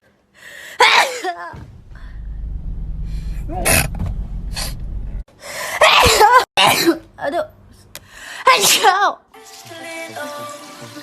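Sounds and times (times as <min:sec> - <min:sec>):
low hum: 0:01.6 - 0:05.3.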